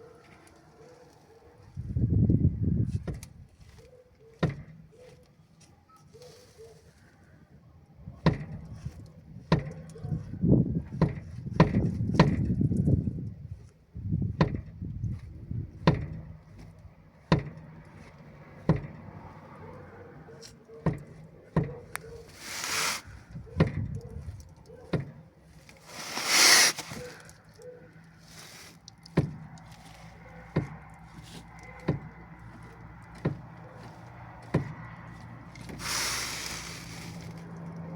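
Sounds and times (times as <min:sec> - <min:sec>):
short loud rushing noises: 0:25.9 - 0:27.1, 0:35.7 - 0:37.4
ball joint knocking: 0:30.4 - 0:35.0.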